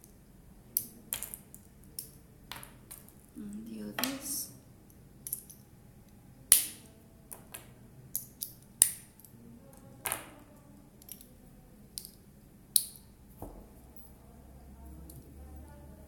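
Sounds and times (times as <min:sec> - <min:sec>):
snap charms clicking into bracelet: 0:08.2 - 0:09.3.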